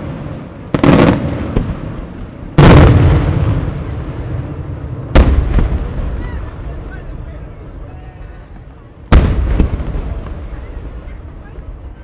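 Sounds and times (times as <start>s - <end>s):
rolling echo: 0.0s - 12.0s.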